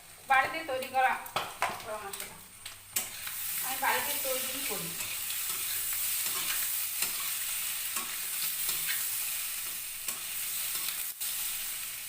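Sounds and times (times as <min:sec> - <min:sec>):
curry sizzling in a frying pan: 0:00.0 - 0:12.0
spatula scraping a pan: 0:04.2 - 0:11.6.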